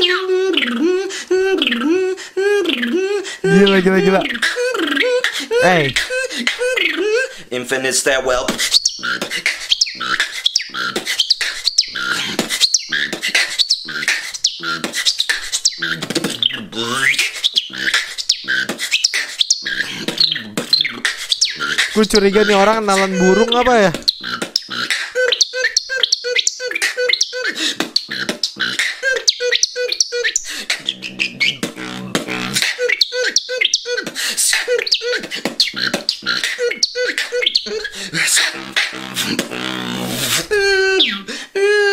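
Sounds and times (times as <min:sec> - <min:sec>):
beatboxing: 0:00.0 - 0:41.9
whistled bird-like chirps: 0:08.6 - 0:31.7, 0:32.8 - 0:34.0.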